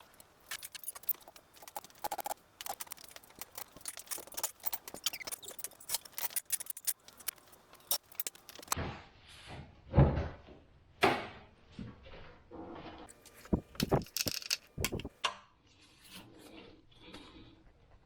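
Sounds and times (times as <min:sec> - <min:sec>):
small hard objects clicking: 0:00.0 - 0:08.8, 0:13.8 - 0:15.1.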